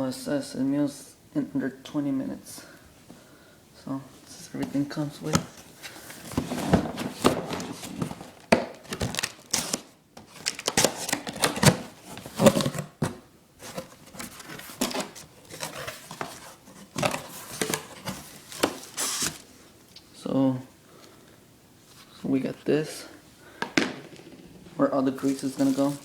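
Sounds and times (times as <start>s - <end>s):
packaging crinkling and rustling: 5.2s - 19.6s, 23.8s - 26.0s.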